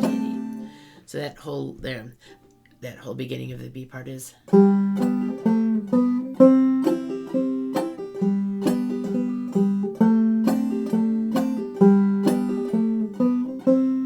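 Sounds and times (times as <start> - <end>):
banjo plucked notes: 0.0 - 1.0, 4.4 - 14.0.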